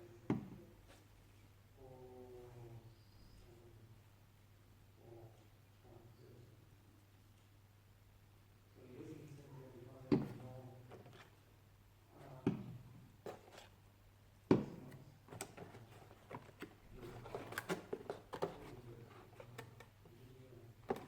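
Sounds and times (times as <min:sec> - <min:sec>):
small clicks and rustles: 0:14.9 - 0:20.2.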